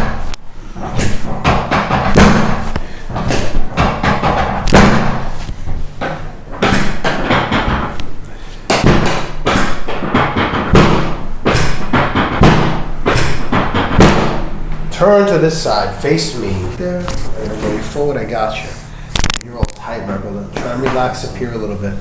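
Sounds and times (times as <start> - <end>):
dull thumps: 0.0 - 14.6.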